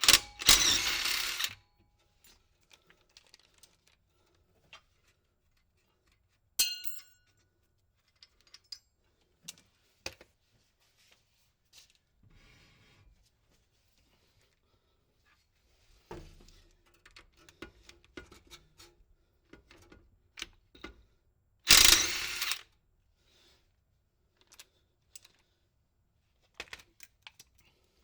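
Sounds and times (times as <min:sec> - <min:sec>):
hand tools on metal: 0:00.0 - 0:01.5.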